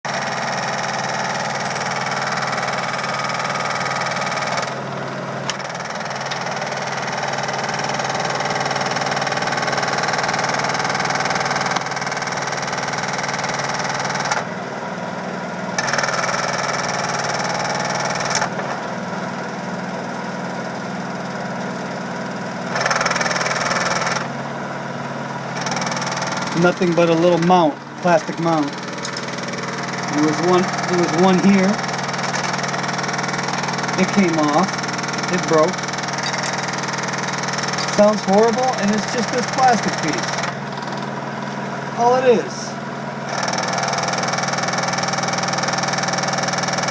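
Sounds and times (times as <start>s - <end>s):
loud banging and rattling: 0.0s - 3.7s
washing machine motor hum: 0.0s - 12.8s, 25.4s - 46.9s.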